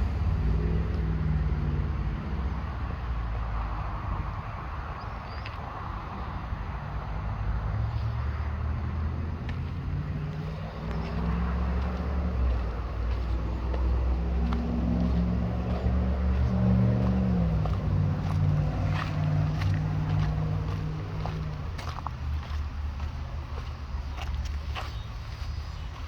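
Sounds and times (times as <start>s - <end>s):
engine running: 0.0s - 4.5s, 8.4s - 26.0s.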